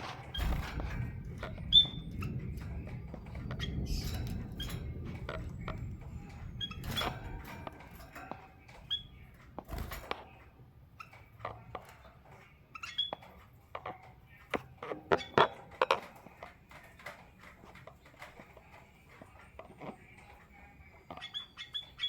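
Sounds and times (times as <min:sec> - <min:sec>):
birds hopping and pecking taps: 0:00.0 - 0:22.0.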